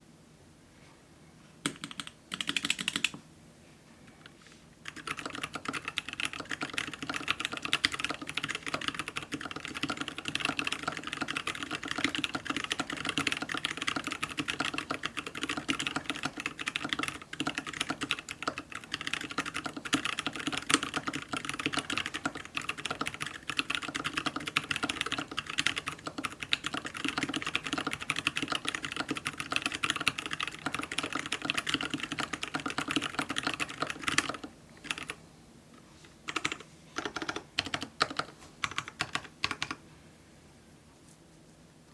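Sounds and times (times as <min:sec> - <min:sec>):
mechanical keyboard typing: 0:01.6 - 0:03.2, 0:04.8 - 0:35.2, 0:36.3 - 0:39.8.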